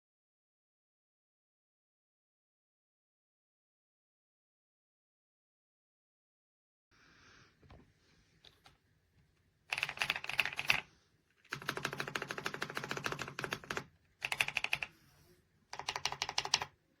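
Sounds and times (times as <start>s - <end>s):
rapid keyboard typing: 9.7s - 14.9s, 15.7s - 16.8s.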